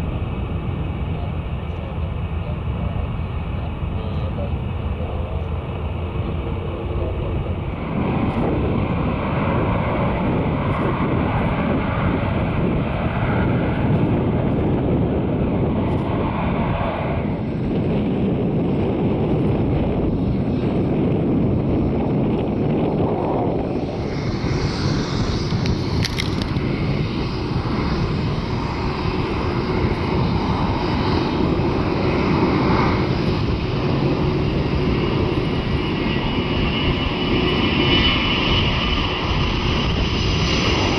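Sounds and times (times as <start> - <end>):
jet engines running: 0.0 - 40.9
high engine hiss: 23.8 - 32.2.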